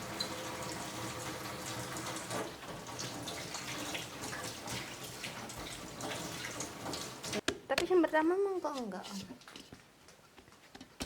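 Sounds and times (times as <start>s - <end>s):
running water: 0.0s - 7.4s
small splashes or clatters: 2.1s - 7.4s.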